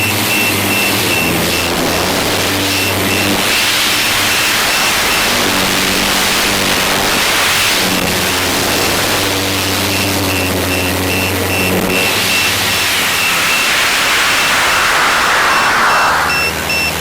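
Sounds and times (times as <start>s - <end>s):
wind and propeller rush: 0.0s - 17.0s
drone motors humming: 9.9s - 17.0s.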